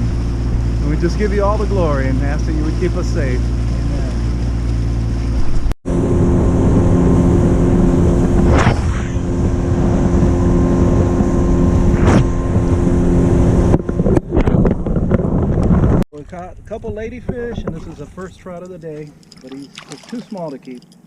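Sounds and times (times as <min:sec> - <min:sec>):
boat motor running: 0:00.0 - 0:21.0
wind buffeting microphone: 0:03.4 - 0:19.2.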